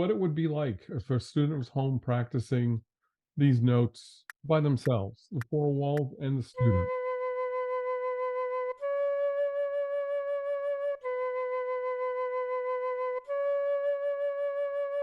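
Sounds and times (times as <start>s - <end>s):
flute playing long notes: 6.6s - 15.0s.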